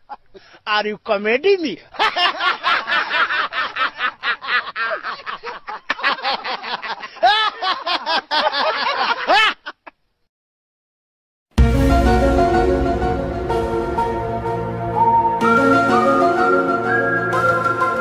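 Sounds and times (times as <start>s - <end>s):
person cackling laughter: 2.0s - 10.0s.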